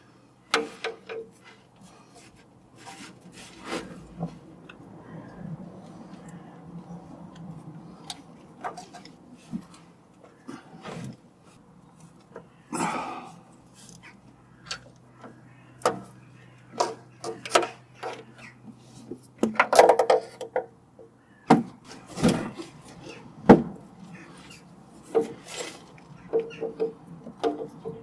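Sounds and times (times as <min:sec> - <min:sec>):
hand tools clicking and knocking: 0:07.3 - 0:10.3, 0:14.6 - 0:18.4, 0:19.2 - 0:20.8, 0:25.0 - 0:28.0.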